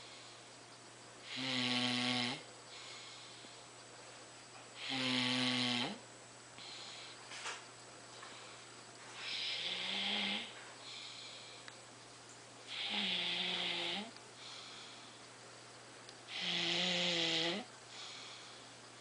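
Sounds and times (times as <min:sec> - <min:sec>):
person snoring: 0:01.2 - 0:02.5, 0:04.8 - 0:06.0, 0:09.2 - 0:11.2, 0:12.7 - 0:15.0, 0:16.3 - 0:18.6.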